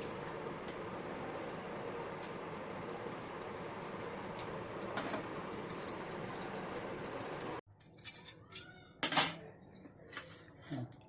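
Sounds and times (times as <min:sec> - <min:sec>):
gas stove burner hissing: 0:00.0 - 0:07.6.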